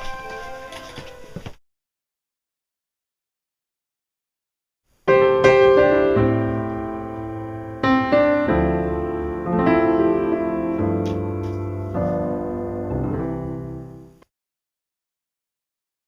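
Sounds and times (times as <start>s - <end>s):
piano music: 0.0s - 1.2s, 5.1s - 14.2s.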